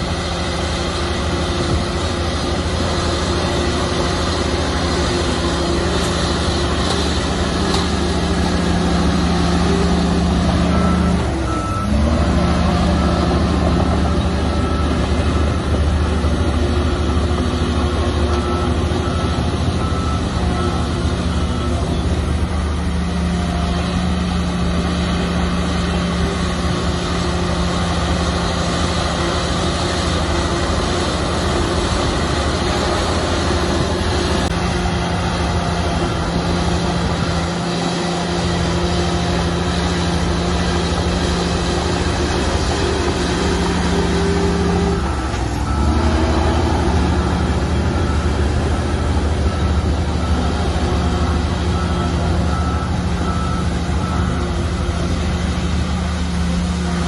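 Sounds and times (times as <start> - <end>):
heavy diesel engine running: 0.0 - 57.0
reversing alarm beeping: 0.1 - 57.0.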